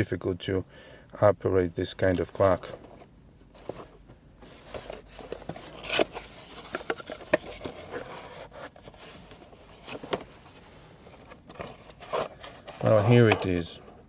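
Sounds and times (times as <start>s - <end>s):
cardboard rubbing and scraping: 4.5s - 13.6s.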